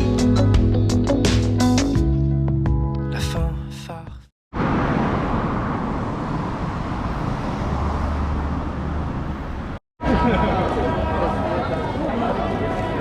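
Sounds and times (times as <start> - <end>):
background music: 0.0 - 4.0
city street ambience: 4.5 - 13.0.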